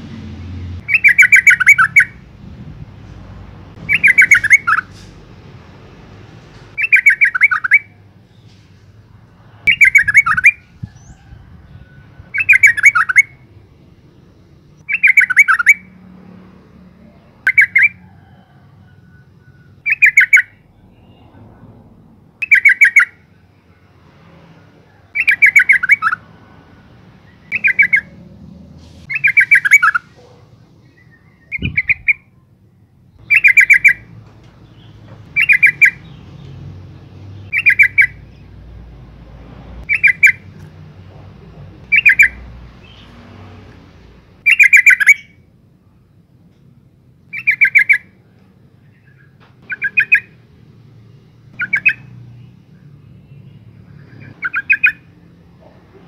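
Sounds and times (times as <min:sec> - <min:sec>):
bird chattering calls: 0:00.8 - 0:02.2, 0:03.8 - 0:05.1, 0:06.8 - 0:08.0, 0:09.7 - 0:11.2, 0:12.3 - 0:13.4, 0:14.8 - 0:15.8, 0:17.4 - 0:18.0, 0:19.8 - 0:20.6, 0:22.4 - 0:23.2, 0:25.2 - 0:26.2, 0:27.4 - 0:28.2, 0:29.1 - 0:32.3, 0:33.2 - 0:36.2, 0:37.4 - 0:38.4, 0:39.8 - 0:40.7, 0:41.8 - 0:43.2, 0:44.4 - 0:45.3, 0:47.3 - 0:48.1, 0:49.0 - 0:50.4, 0:51.6 - 0:52.2, 0:53.8 - 0:56.0.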